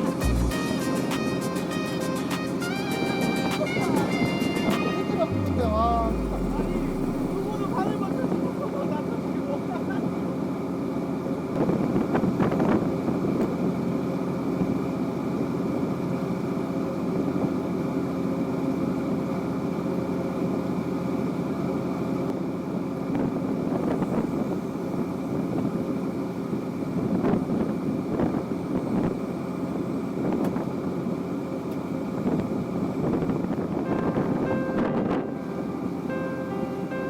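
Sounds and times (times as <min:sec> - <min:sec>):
boat engine droning: 0:02.6 - 0:11.2.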